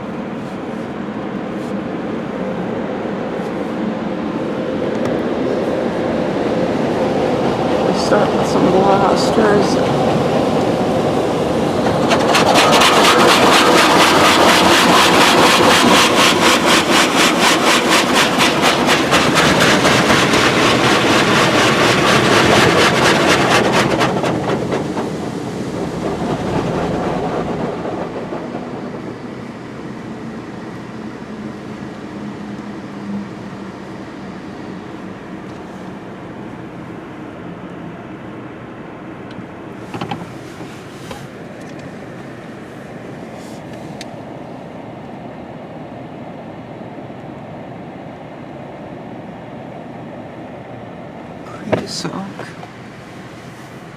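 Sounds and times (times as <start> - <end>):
car wash machinery: 0.0 - 53.9
high-pressure water spraying: 10.8 - 26.6.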